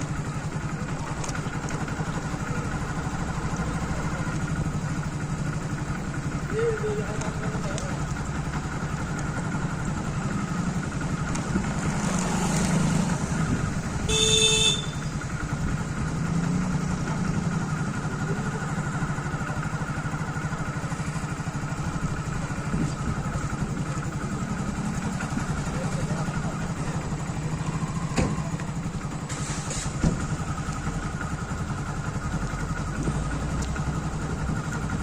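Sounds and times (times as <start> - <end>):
motorcycle engine running: 0.0 - 35.0
horn beep: 14.0 - 15.2.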